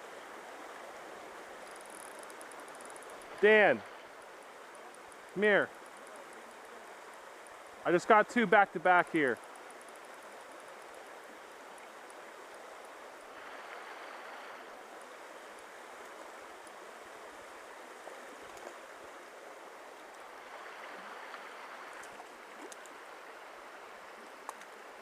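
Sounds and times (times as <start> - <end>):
stream flowing over rocks: 0.0 - 25.0
faint light clicks: 21.3 - 23.0, 24.4 - 24.8.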